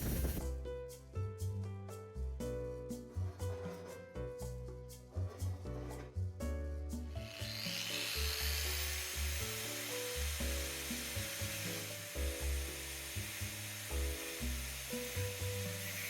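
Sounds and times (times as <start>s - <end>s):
power tool grinding metal: 7.2s - 16.0s.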